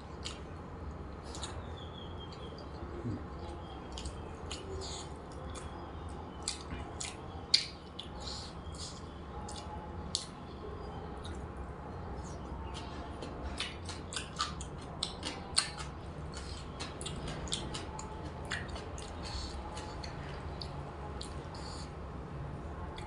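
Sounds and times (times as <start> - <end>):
steady low hum: 0.0 - 23.0
person chewing crisp food: 1.2 - 1.7, 3.4 - 10.4, 12.2 - 22.0.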